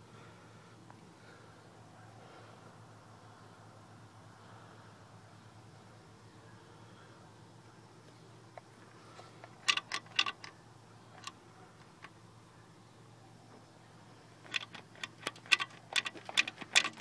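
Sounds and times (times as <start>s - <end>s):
small metal parts clinking: 9.4s - 12.1s, 14.4s - 17.0s.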